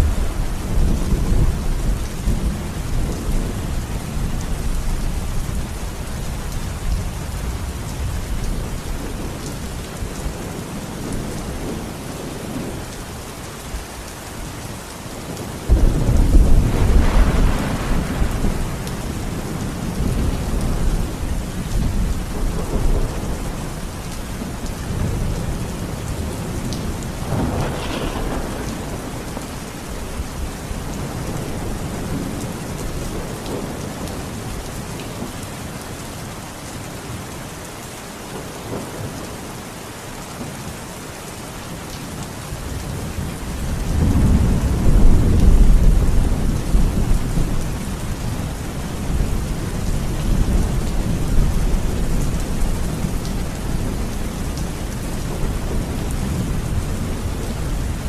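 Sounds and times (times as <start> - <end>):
thunder rumbling: 0.0 - 5.7, 15.3 - 34.6, 42.8 - 58.0
heavy rain: 0.0 - 58.0
thunder crack: 15.7 - 18.8, 27.3 - 29.6.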